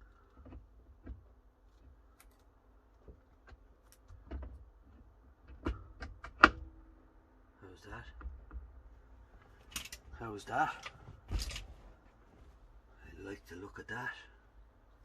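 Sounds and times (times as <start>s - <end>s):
clicks and knocks of steering wheel: 3.0s - 6.7s.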